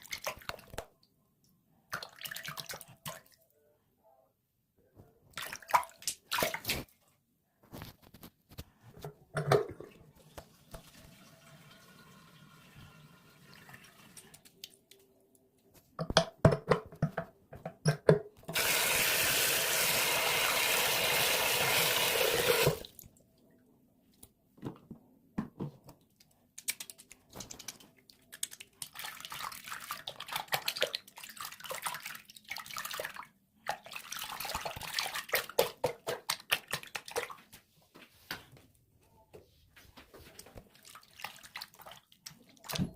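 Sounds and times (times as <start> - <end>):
water tap running: 10.8 - 14.2, 18.5 - 22.9
liquid soap squishing: 25.9 - 37.6, 40.1 - 42.9.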